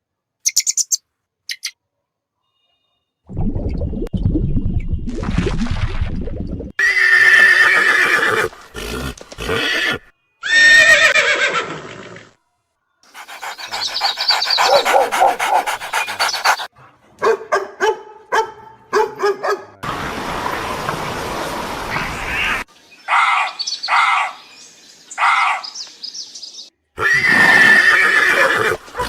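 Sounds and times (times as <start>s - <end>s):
horses whinnying: 6.8s - 12.3s, 27.0s - 29.0s.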